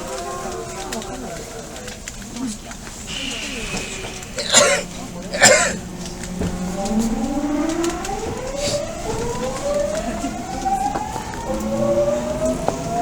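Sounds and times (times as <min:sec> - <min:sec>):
train inverter and motors whining: 0:03.0 - 0:13.0
short hiss: 0:03.1 - 0:05.4.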